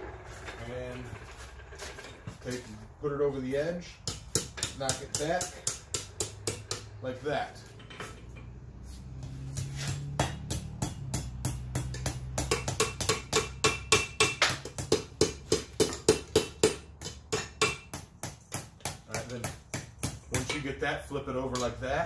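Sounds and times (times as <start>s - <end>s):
hammer striking hot steel on anvil: 4.0s - 7.0s, 9.8s - 20.8s.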